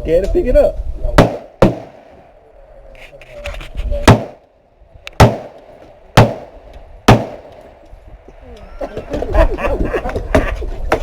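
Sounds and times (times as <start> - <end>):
gunshots: 1.2 - 2.3, 4.0 - 4.5, 5.2 - 7.8.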